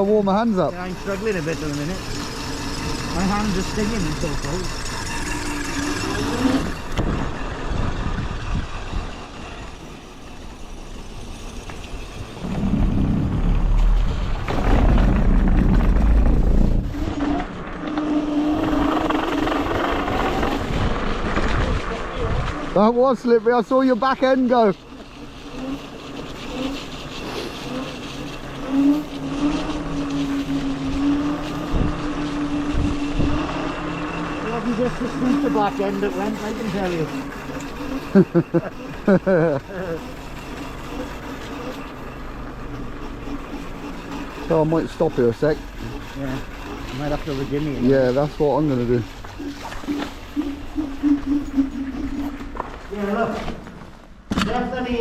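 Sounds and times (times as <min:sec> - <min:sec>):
electric scooter motor whine: 0:00.0 - 0:55.0
rough rolling noise: 0:00.0 - 0:55.0
wind rumble on microphone: 0:06.2 - 0:09.7, 0:11.8 - 0:22.8, 0:29.8 - 0:33.8.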